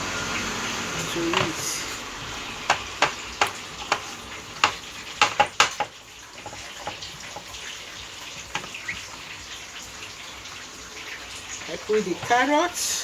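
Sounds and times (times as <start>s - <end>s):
steady hiss: 0.0s - 13.0s
vegetables clicking against dish: 1.0s - 9.2s.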